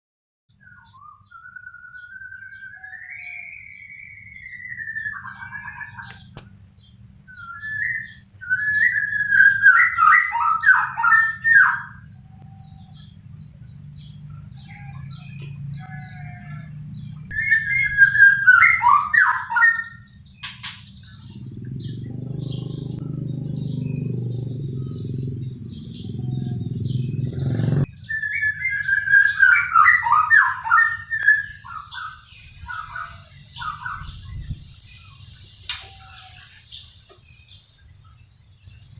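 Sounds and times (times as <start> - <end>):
bird singing whistled phrases: 0.5 - 6.4, 7.3 - 13.1, 17.3 - 21.3, 27.9 - 36.4
steady low hum: 3.6 - 29.2
loud low rumble: 20.1 - 28.1.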